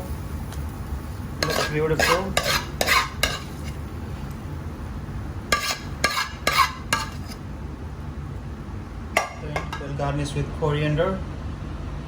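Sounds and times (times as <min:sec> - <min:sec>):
low steady hum: 0:00.0 - 0:12.0
spoon scraping a cooking pan: 0:01.3 - 0:03.9, 0:05.5 - 0:07.5.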